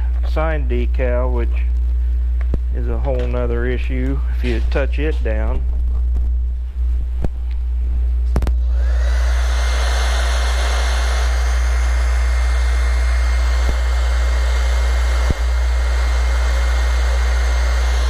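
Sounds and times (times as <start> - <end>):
heat gun blowing and whining: 8.4 - 18.0.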